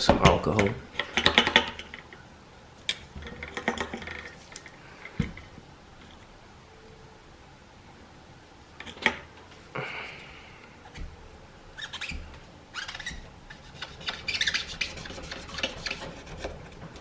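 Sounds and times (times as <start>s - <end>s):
scraping and rubbing on tablet frame: 10.8s - 17.0s
short scratchy strokes: 11.8s - 16.7s.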